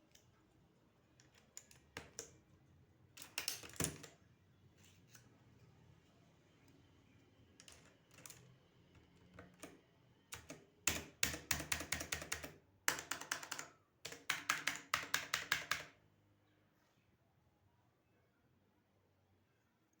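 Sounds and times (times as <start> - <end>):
mechanical keyboard typing: 3.2 - 4.2, 7.6 - 16.0.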